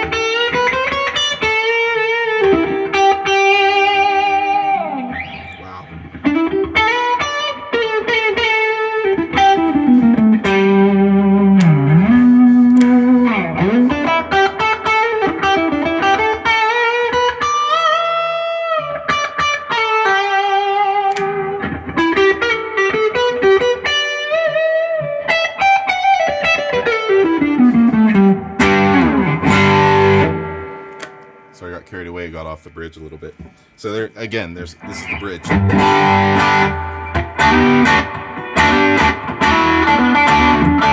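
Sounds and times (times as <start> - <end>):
electric guitar lead line: 0.0 - 31.6, 34.8 - 40.9
strummed guitar chord: 34.8 - 40.9.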